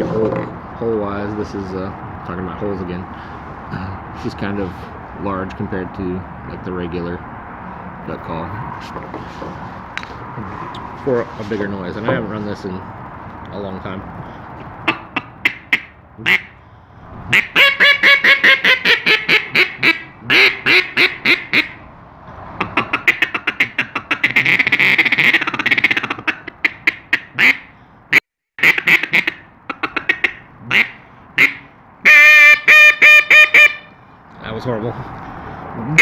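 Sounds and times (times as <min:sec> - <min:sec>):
duck call quacking: 0:14.8 - 0:16.6, 0:17.3 - 0:21.8, 0:22.6 - 0:27.7, 0:28.6 - 0:33.9.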